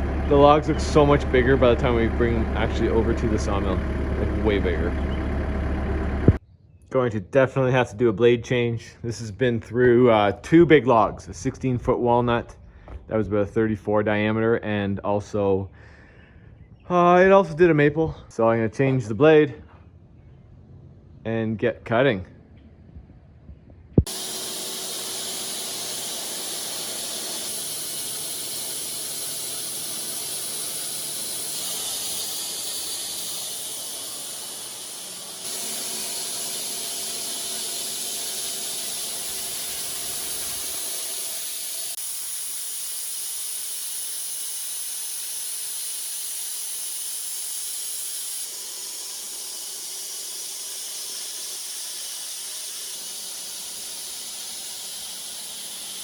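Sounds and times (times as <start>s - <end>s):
bandsaw blade hissing through log: 24.0s - 56.0s.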